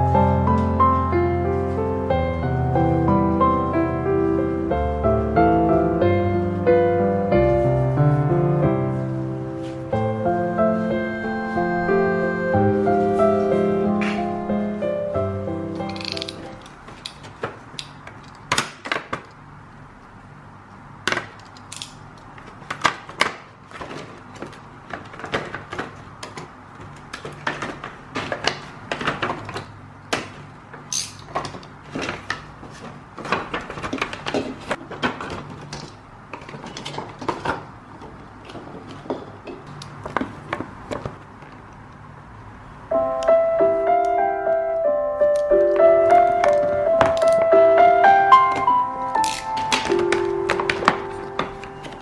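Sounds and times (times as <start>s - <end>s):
clicks and taps of decorations: 45.3s - 47.5s, 48.4s - 52.0s.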